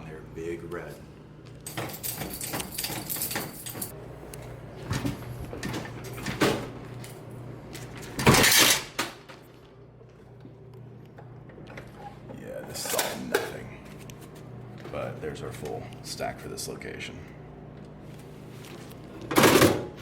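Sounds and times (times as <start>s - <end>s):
vending machine clattering: 1.6s - 3.9s, 19.3s - 20.0s.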